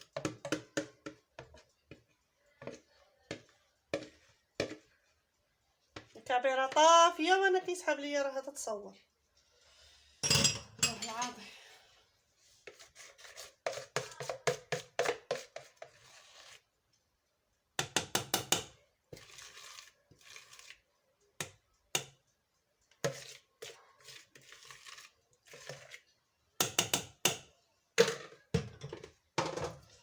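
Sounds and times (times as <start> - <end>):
kitchen knocks and clatter: 0.0 - 4.9, 10.2 - 11.4, 17.8 - 18.8, 26.6 - 30.0.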